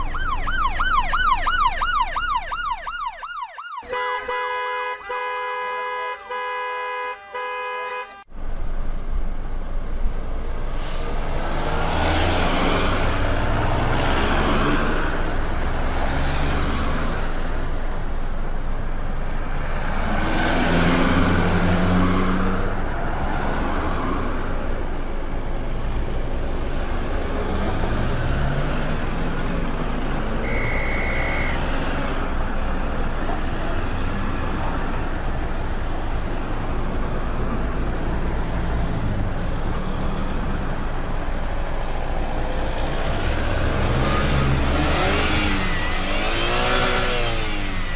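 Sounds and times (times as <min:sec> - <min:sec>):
street traffic passing: 0:00.0 - 0:47.9
vehicle horn blasts: 0:03.8 - 0:08.3, 0:30.4 - 0:31.8
engines revving: 0:10.4 - 0:18.0, 0:19.1 - 0:47.9
short high horn toot: 0:30.4 - 0:32.0.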